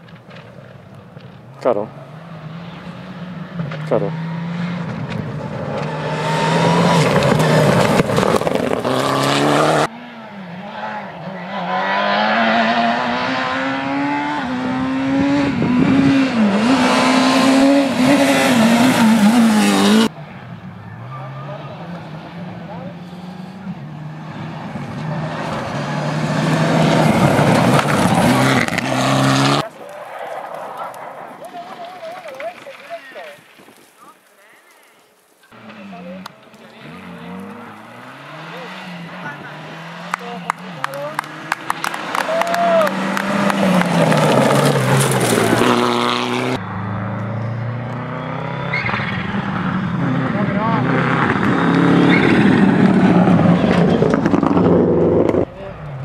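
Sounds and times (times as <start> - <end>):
tyres on gravel: 0.0 - 3.0, 3.6 - 9.9, 24.7 - 46.6
rally car engine passing: 0.1 - 32.2, 35.5 - 56.0.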